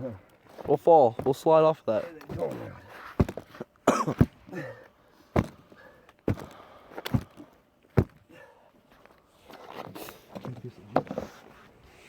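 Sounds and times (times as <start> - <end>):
dull thumps: 2.2 - 4.5, 5.3 - 8.3.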